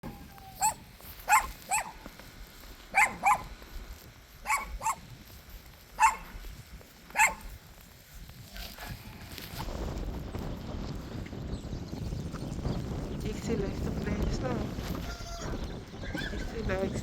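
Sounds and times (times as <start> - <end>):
dog barking: 0.5 - 2.0, 2.9 - 3.5, 4.4 - 5.0, 6.0 - 6.3, 7.1 - 7.5.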